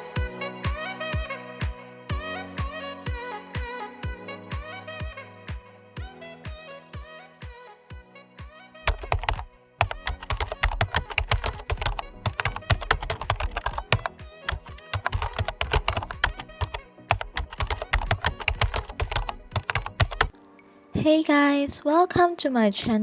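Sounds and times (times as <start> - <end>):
background music: 0.0 - 23.0
rapid sharp clicks: 8.9 - 20.4.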